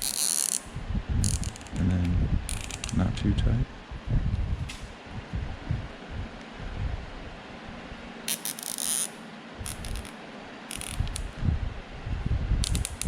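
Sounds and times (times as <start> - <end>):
zip ties ratchet clicking: 12.6 - 13.0.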